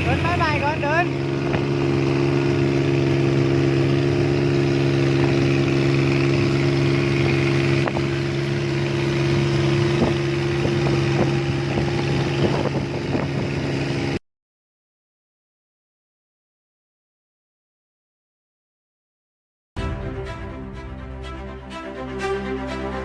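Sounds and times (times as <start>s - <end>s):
boat engine running: 0.0s - 14.2s, 19.8s - 23.0s.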